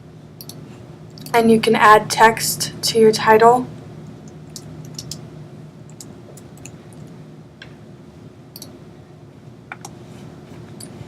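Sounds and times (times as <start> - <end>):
low steady hum: 0.0 - 11.0
computer clicks: 0.4 - 0.6, 4.3 - 5.2, 5.9 - 6.8, 8.5 - 8.8.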